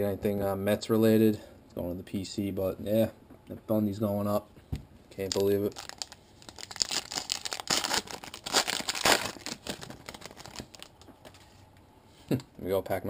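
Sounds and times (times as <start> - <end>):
foil wrapper crinkling and tearing: 5.2 - 11.4.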